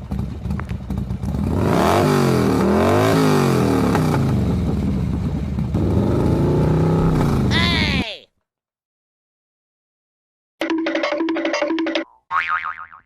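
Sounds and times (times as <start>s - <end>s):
cartoon motorbike engine revving: 1.4s - 5.0s, 5.6s - 8.0s.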